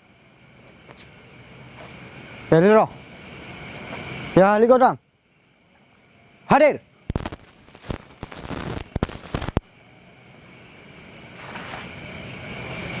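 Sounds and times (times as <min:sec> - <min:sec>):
microphone handling crackle: 0:07.1 - 0:09.6
high-pitched hum: 0:07.1 - 0:09.7.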